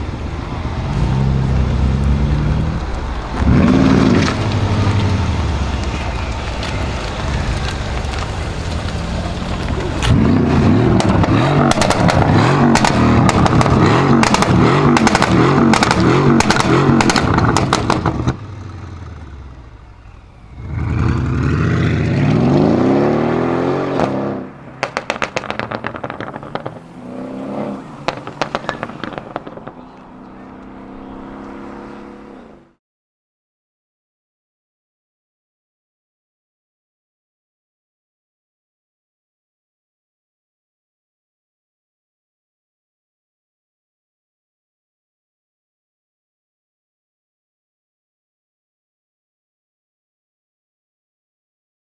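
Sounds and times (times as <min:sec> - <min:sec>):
exhaust crackles and pops: 0:00.0 - 0:19.1, 0:24.0 - 0:27.1, 0:27.7 - 0:31.6
car engine accelerating: 0:00.0 - 0:32.8.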